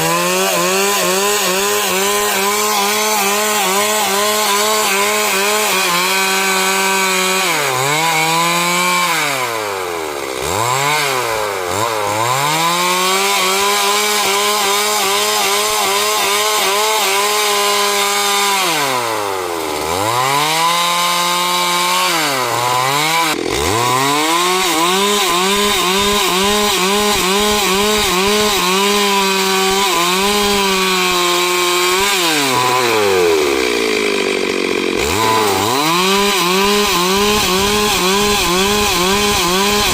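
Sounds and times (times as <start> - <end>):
chainsaw revving cutting wood: 0.0 - 39.9.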